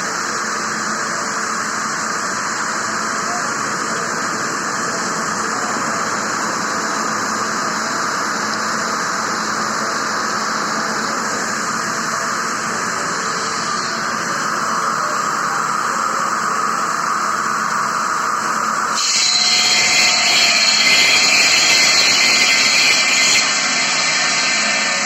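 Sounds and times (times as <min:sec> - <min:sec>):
machine hiss: 0:00.0 - 0:25.0.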